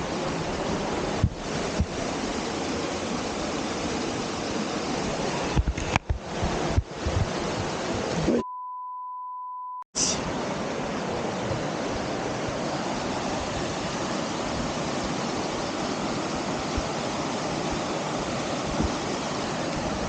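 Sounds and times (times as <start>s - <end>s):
waterfall rushing: 0.0s - 8.4s, 10.0s - 20.0s
electronic beep: 8.3s - 9.9s.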